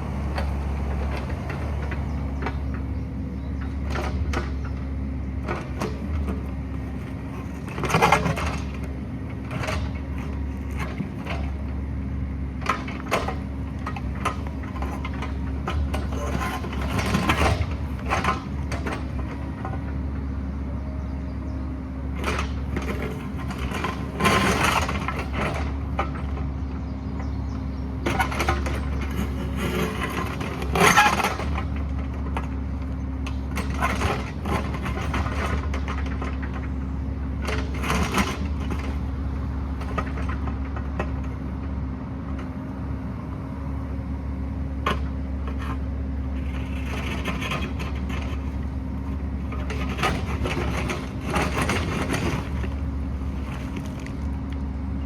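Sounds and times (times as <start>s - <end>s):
excavator diesel engine: 0.0s - 55.0s
bucket scraping and clanking on rock: 49.4s - 54.4s.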